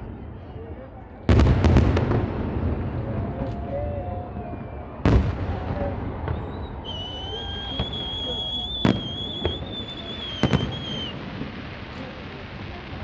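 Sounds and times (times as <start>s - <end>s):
faint crowd voices: 0.0s - 13.0s
fireworks bursts echoing: 1.3s - 3.5s, 4.4s - 13.0s
high-pitched whistle: 6.4s - 11.2s.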